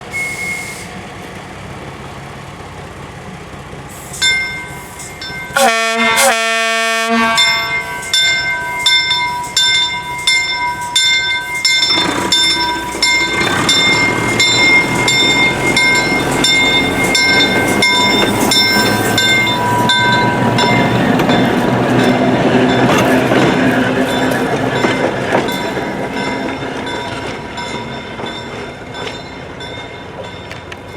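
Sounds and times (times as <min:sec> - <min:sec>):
wheels on rail: 0:00.0 - 0:30.9
motor car bell ringing: 0:04.2 - 0:06.0, 0:07.3 - 0:30.9
short horn blasts: 0:05.6 - 0:08.0.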